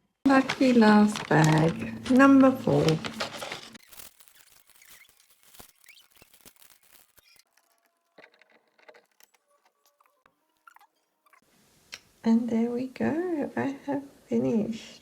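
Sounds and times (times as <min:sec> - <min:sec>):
plastic toy bricks clicking: 0:07.4 - 0:10.2.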